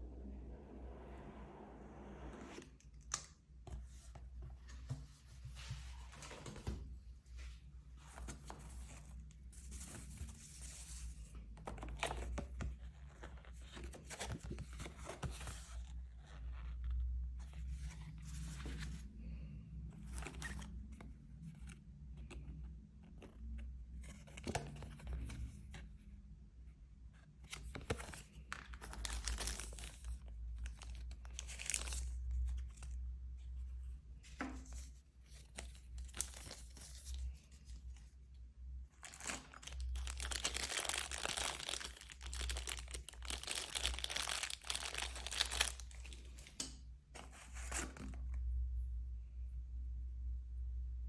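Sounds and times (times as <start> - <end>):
packaging rustling and tearing: 28.0 - 32.8, 35.6 - 37.2, 39.0 - 46.5.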